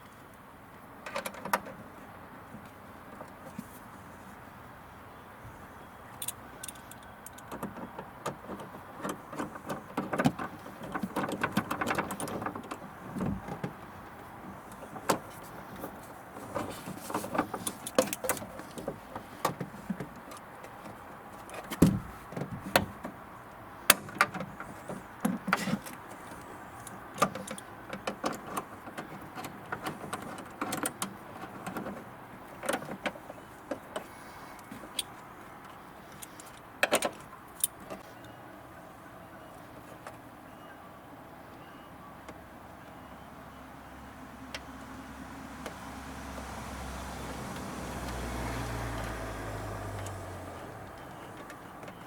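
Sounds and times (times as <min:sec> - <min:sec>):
tools clicking and rattling: 0:06.2 - 0:13.8, 0:14.7 - 0:22.0.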